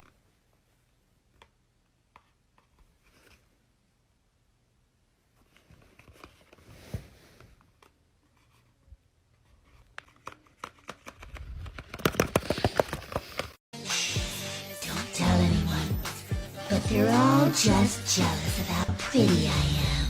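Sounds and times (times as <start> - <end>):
paper crinkling and clicking: 9.6 - 13.6.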